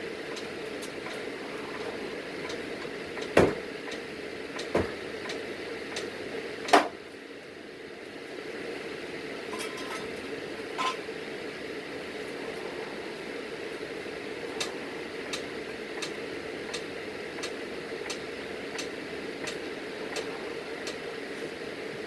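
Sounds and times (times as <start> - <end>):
steady hum: 0.0 - 22.0
metal clanks from car jack: 9.5 - 10.1, 10.8 - 11.0.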